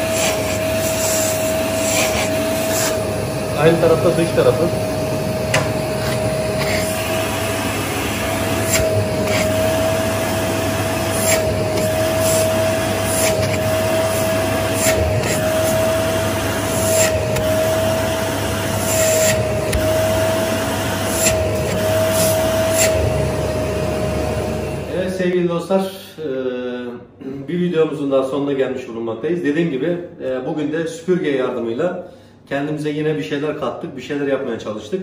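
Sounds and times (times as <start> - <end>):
nozzle rubbing on skin: 0.0 - 2.9, 6.0 - 7.2, 8.4 - 10.1
vacuum cleaner whining: 0.0 - 25.4.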